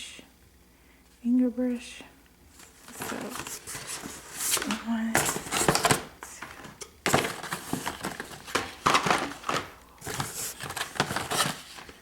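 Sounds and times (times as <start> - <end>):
plastic packaging crinkling: 7.1 - 12.0.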